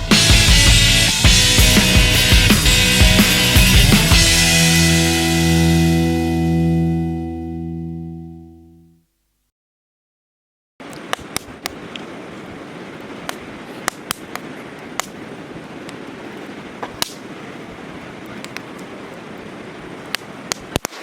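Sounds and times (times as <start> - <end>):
campfire hissing: 0.0 - 5.1, 11.0 - 21.0
fire crackles and pops: 10.9 - 12.1, 12.9 - 21.0.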